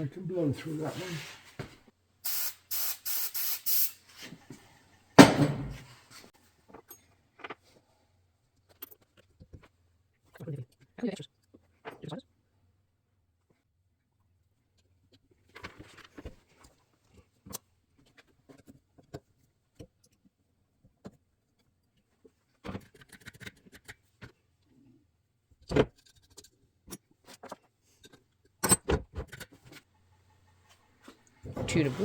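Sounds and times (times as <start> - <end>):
loud knocks: 5.2 - 5.8.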